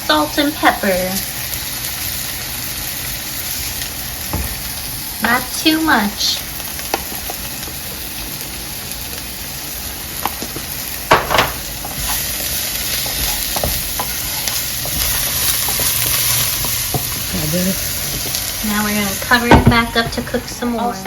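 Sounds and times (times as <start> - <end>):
vegetables sizzling in a pan: 0.0 - 21.0.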